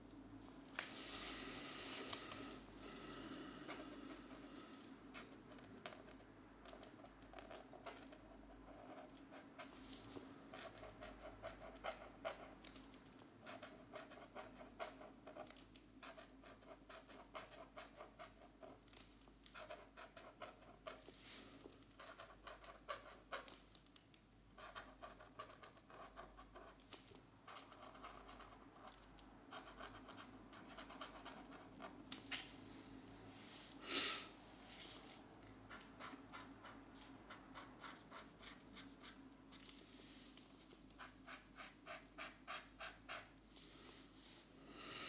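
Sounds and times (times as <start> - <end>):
markers scratching on paper: 24.6 - 32.0, 35.6 - 43.4.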